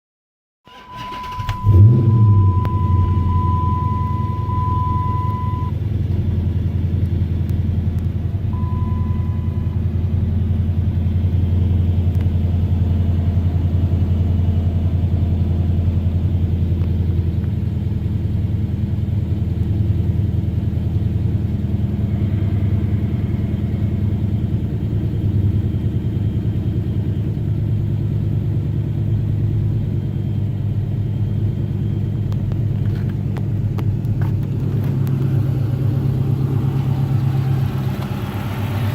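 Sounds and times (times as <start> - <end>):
short electronic beep: 0.7 - 5.8, 8.6 - 9.8
car engine idling: 0.7 - 38.9.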